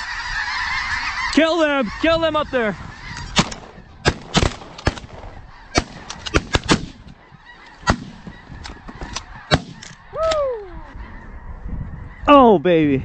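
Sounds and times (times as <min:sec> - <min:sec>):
geese honking: 0:00.0 - 0:12.4
shotgun blasts: 0:03.4 - 0:07.0, 0:07.8 - 0:08.3, 0:09.5 - 0:09.9.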